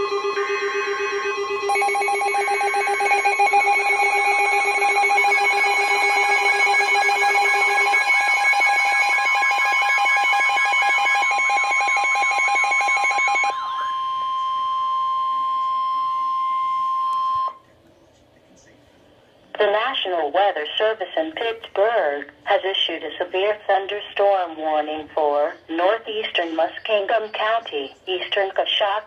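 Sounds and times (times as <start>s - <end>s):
electronic alarm beeps: 0.0s - 17.6s
steady alarm tone: 0.0s - 17.6s
warbling alarm tone: 0.0s - 17.6s.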